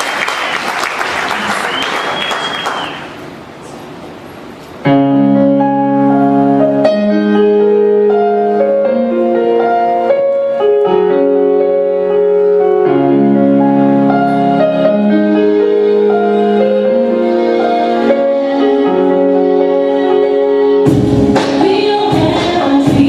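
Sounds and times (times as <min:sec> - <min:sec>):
slow instrumental music: 0:04.7 - 0:23.0.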